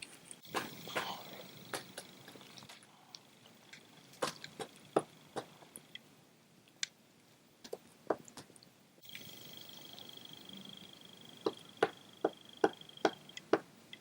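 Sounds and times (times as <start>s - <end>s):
woodpecker knocking on wood: 11.4s - 13.7s.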